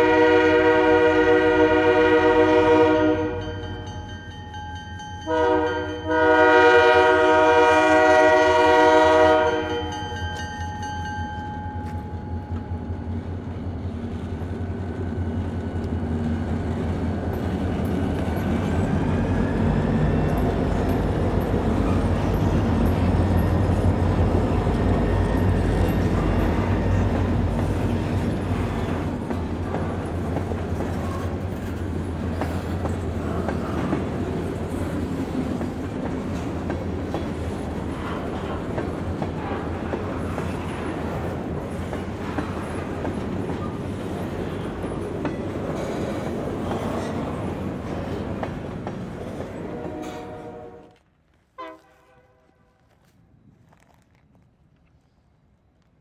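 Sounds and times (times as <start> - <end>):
locomotive air horn blasts: 0.0 - 3.4, 5.3 - 9.8, 49.7 - 51.0, 51.6 - 52.8
train rumbling past: 0.0 - 51.1.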